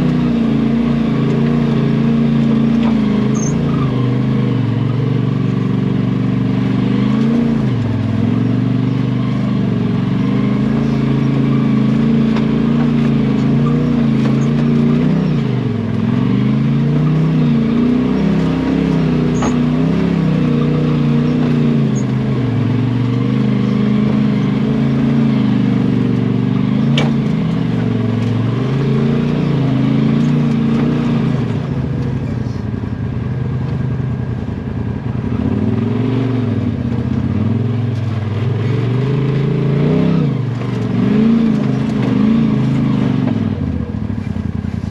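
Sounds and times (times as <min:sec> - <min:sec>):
off-road vehicle engine revving: 0:00.0 - 0:44.9.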